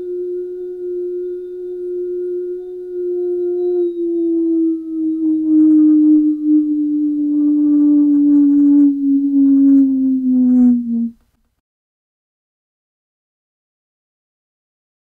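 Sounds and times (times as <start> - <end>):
tornado warning siren: 0.0 - 11.2.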